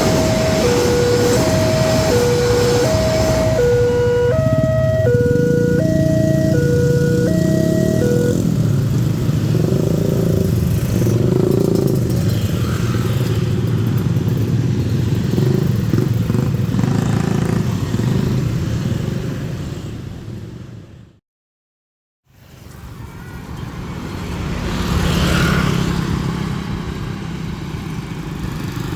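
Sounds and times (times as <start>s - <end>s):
train rumbling and clattering: 0.0s - 3.5s
level crossing warning bell: 0.0s - 8.6s.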